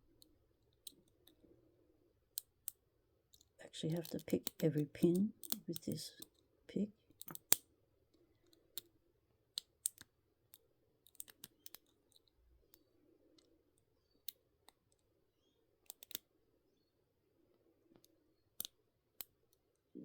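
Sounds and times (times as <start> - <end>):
lock pick clicking: 2.3 - 6.4, 7.1 - 7.7, 9.5 - 12.3, 15.8 - 16.3, 18.0 - 19.6.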